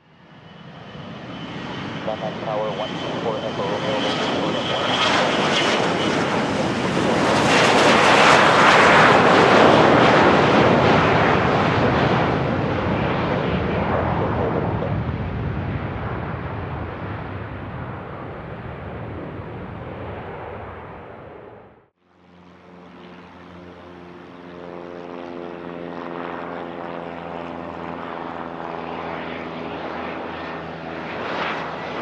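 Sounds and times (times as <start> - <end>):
jet engines passing: 0.0 - 21.9.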